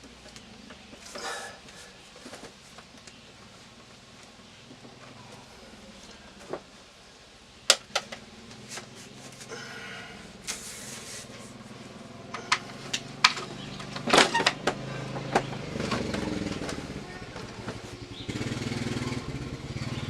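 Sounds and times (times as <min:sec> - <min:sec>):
short rustle: 0:10.4 - 0:11.8
clicks and knocks of wiring work: 0:12.4 - 0:16.8.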